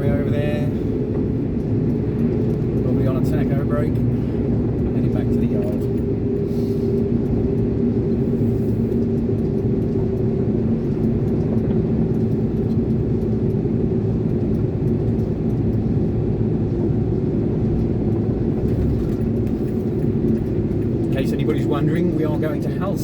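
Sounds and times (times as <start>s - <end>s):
diesel engine drone in cab: 0.0s - 23.0s.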